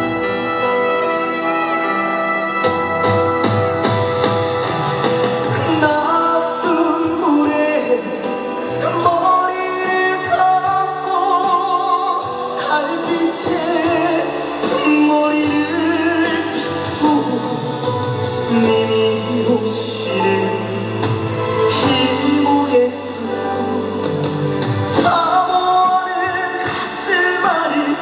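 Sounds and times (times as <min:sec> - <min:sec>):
wavering lead melody: 0:00.0 - 0:07.9
keyboard chords and bass: 0:00.0 - 0:28.0.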